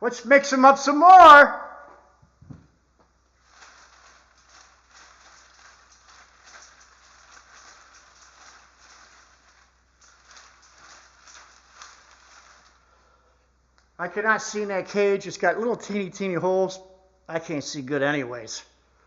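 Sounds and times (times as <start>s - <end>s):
soft low thud: 2.4s - 2.8s
paper tickets tumbling in wire cage: 3.4s - 13.1s.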